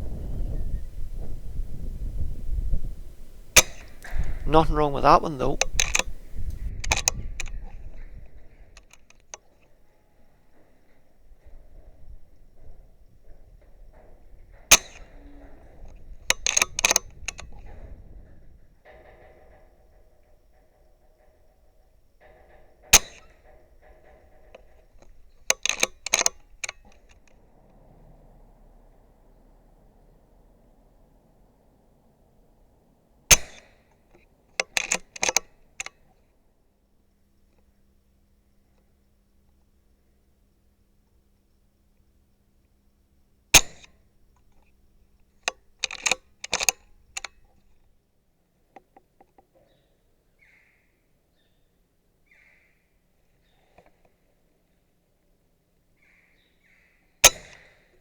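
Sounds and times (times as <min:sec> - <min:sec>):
scuffling clicks and rustles: 0:03.6 - 0:07.6
clicks and rattles: 0:03.6 - 0:07.8, 0:22.2 - 0:27.3, 0:34.6 - 0:36.0, 0:45.4 - 0:47.5.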